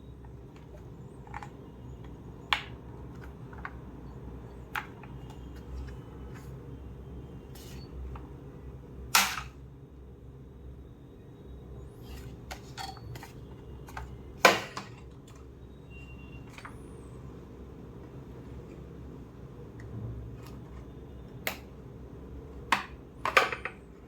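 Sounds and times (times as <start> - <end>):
plastic parts snapping: 9.1 - 9.6.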